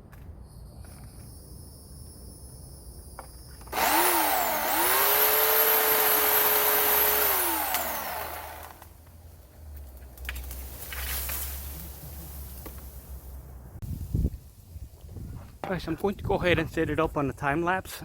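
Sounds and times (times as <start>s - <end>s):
electric chainsaw motor whine: 3.6s - 8.9s.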